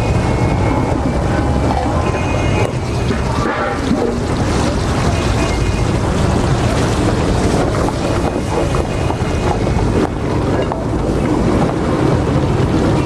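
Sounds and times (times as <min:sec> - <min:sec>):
loud rushing noise: 0:00.0 - 0:13.0.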